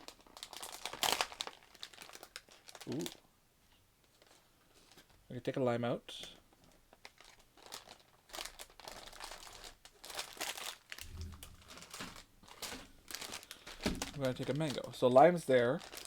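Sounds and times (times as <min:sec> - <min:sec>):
plastic packaging crinkling: 0:00.0 - 0:03.2, 0:06.6 - 0:16.0.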